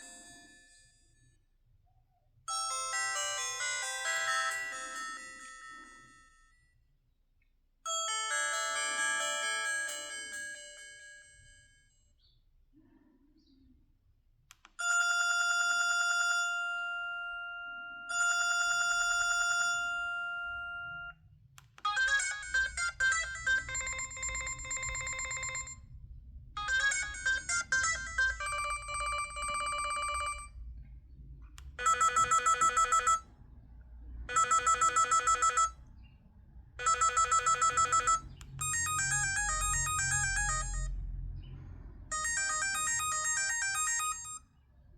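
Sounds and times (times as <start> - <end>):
beeping ringtone melody: 2.5 - 6.5, 7.9 - 11.6, 14.8 - 21.2, 21.9 - 25.9, 26.6 - 30.5, 31.8 - 33.3, 34.3 - 35.8, 36.8 - 41.1, 42.1 - 44.6
phone electronic ringing: 2.6 - 6.6, 14.8 - 21.2, 21.8 - 25.9, 26.6 - 30.5, 31.8 - 33.3, 34.3 - 35.8, 36.8 - 41.0, 42.1 - 44.5.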